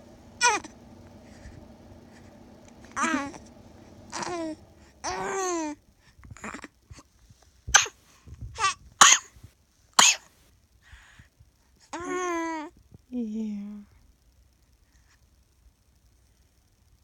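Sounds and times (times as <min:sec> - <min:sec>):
baby coughing: 0:09.0 - 0:09.3, 0:10.0 - 0:10.3.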